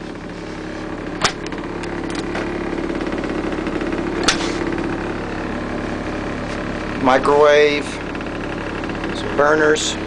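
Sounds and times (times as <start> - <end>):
diesel engine idling: 0.0 - 10.0
sharp click: 4.2 - 4.6.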